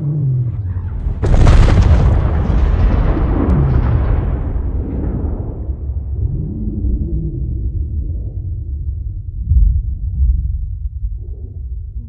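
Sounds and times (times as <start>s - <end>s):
heavy booming crash: 0.8s - 8.0s.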